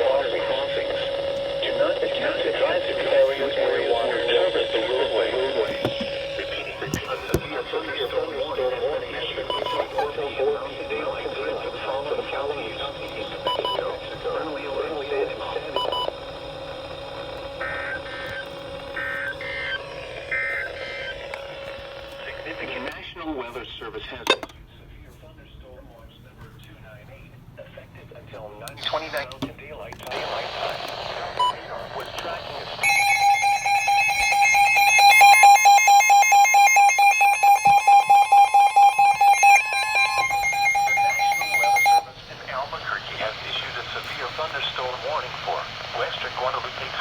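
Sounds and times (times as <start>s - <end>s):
rapidly pulsing electronic beep: 0.0s - 22.9s, 31.3s - 42.2s
steady high tone: 0.0s - 23.0s, 31.5s - 42.6s
warbling digital data bursts: 32.2s - 42.1s.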